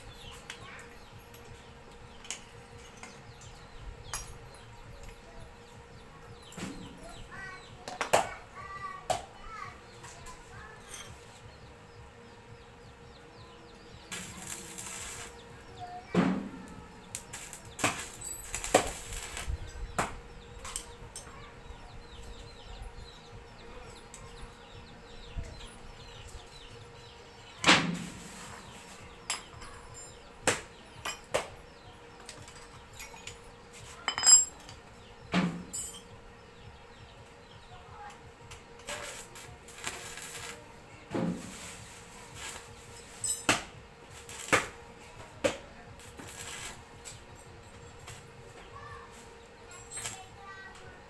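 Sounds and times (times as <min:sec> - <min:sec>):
hissing crackle bursts: 0:14.0 - 0:19.7, 0:27.7 - 0:29.2, 0:38.8 - 0:45.0, 0:46.0 - 0:47.3
metal knocks and clinks: 0:34.0 - 0:34.8, 0:35.6 - 0:36.1.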